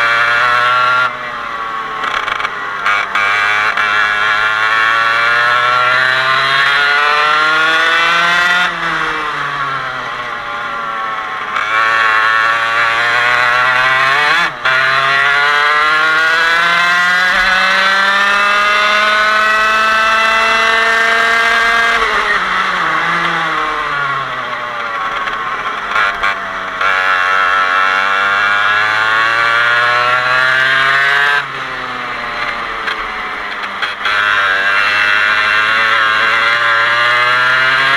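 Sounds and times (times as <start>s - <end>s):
kart engine accelerating and braking: 0.0s - 37.9s.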